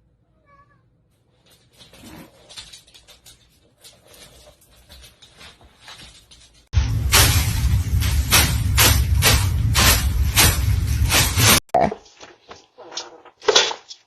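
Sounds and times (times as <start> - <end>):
cat meowing: 0.2 - 0.9
scratching and rustling: 1.2 - 14.0.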